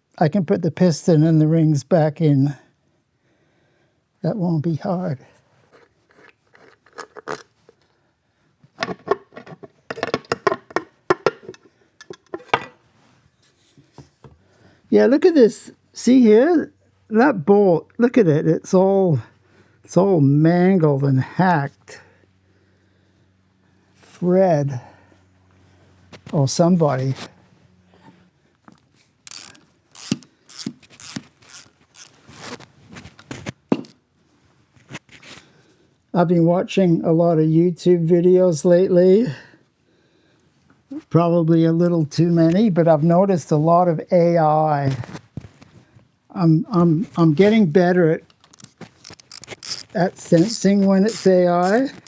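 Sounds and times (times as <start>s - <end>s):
ratchet wrench clicking: 29.3s - 32.2s, 48.5s - 49.9s.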